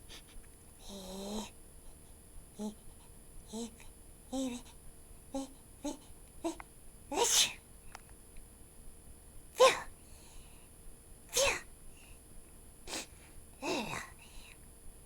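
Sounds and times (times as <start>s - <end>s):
high-pitched cartoon sneezes: 7.1s - 7.6s, 9.6s - 9.9s, 11.3s - 11.7s.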